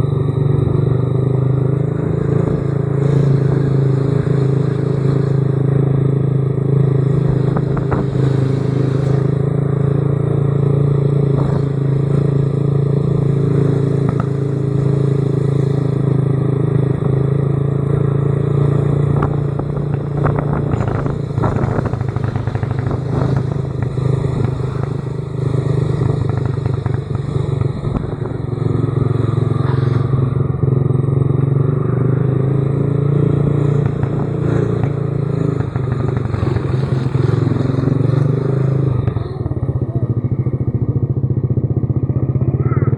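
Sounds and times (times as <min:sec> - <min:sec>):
engine running with clattering: 0:00.0 - 0:42.9.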